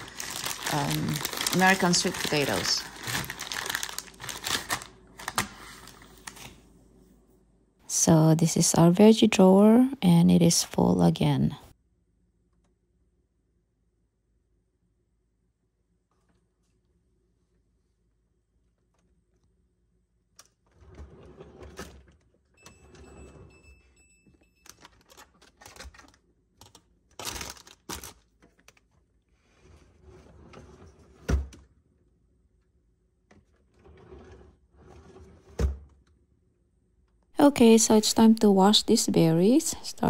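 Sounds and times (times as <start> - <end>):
rustling: 0.0 - 6.5.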